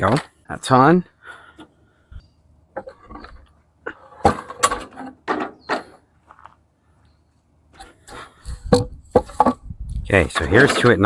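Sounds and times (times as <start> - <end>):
metal tools clunking and rattling: 1.4 - 6.4, 7.8 - 11.0.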